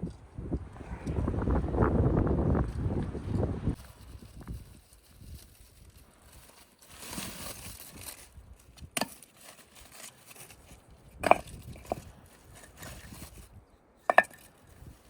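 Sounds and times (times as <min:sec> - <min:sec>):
rustling: 0:03.7 - 0:15.0.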